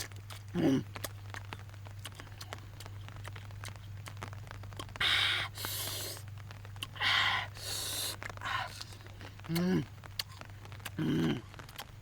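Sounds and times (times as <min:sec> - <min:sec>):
food crunching: 0:00.0 - 0:12.0
mouth sounds while eating: 0:00.0 - 0:12.0
steady low hum: 0:00.0 - 0:12.0.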